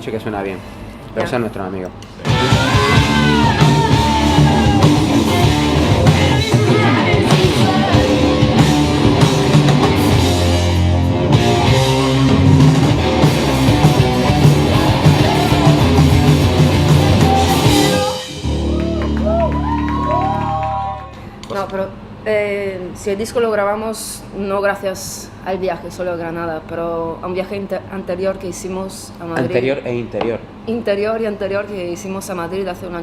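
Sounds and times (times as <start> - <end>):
person singing: 2.2 - 8.6, 17.0 - 18.5
heavy rock music: 2.2 - 20.5
distorted electric guitars: 2.2 - 20.9
drum kit: 2.2 - 20.9.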